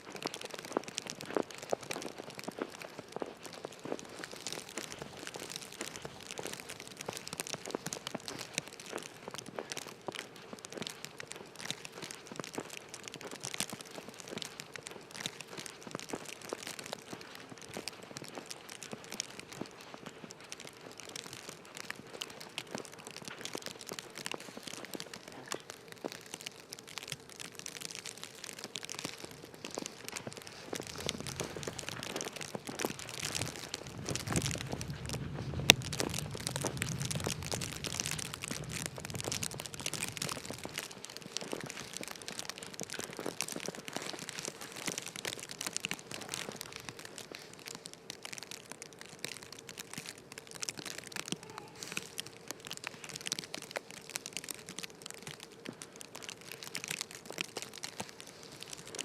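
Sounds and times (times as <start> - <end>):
snow crunching underfoot: 0.0 - 59.0
low rumble: 30.9 - 40.8.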